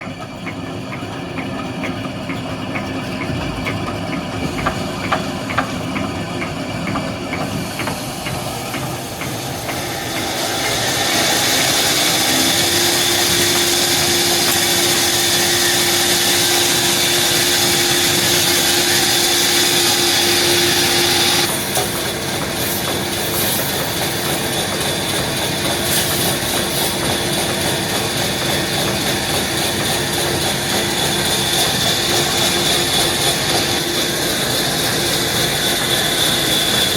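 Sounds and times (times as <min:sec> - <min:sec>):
sawmill machinery running: 0:00.0 - 0:36.9
knocks: 0:03.2 - 0:06.1
saw blade cutting log: 0:03.2 - 0:36.9.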